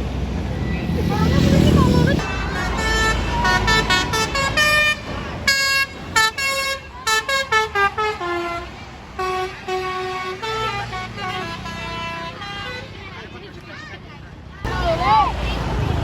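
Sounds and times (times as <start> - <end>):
bus engine running: 0.0 - 16.0
bus horn playing melody: 1.8 - 13.0.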